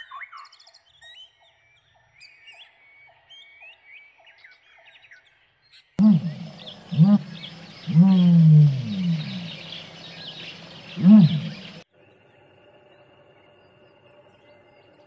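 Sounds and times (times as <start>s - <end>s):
low animal calls: 6.0s - 11.8s
small birds chirping: 6.0s - 11.8s
faint steady hum: 6.0s - 15.0s.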